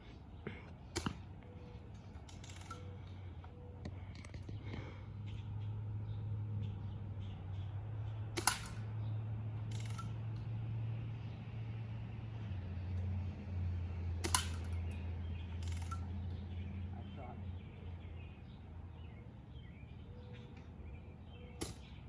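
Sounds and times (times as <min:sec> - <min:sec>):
steady low hum: 0:00.0 - 0:22.0
bb gun shot crack: 0:01.0 - 0:01.3, 0:08.3 - 0:08.9, 0:14.2 - 0:14.8.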